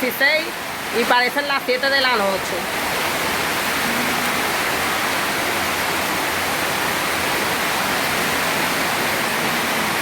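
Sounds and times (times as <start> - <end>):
heavy rain pouring: 0.0 - 10.0.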